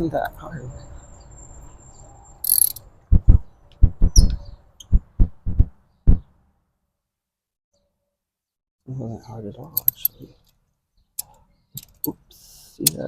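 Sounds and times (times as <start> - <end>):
dull low thumps: 3.1 - 6.3.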